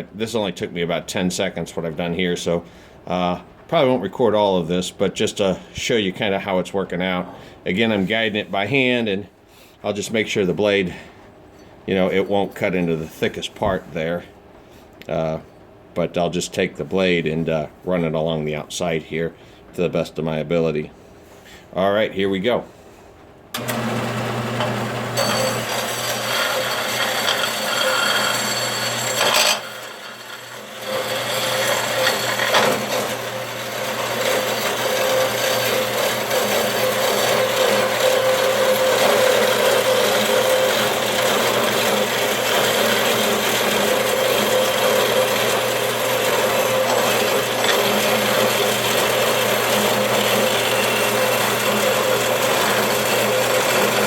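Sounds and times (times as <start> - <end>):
band saw rasping through metal: 23.6 - 54.0
saw motor hum: 23.6 - 54.0.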